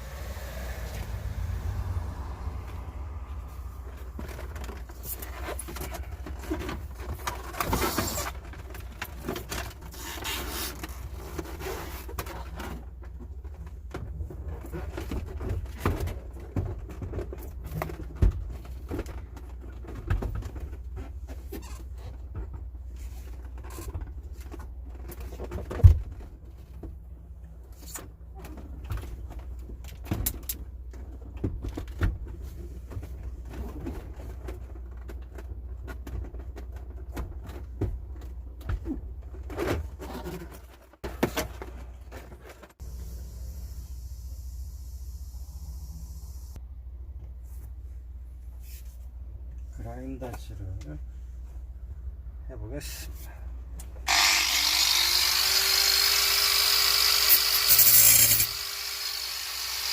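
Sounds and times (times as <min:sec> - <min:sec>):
rustling and scraping: 0:02.6 - 0:42.9, 0:47.2 - 0:51.9.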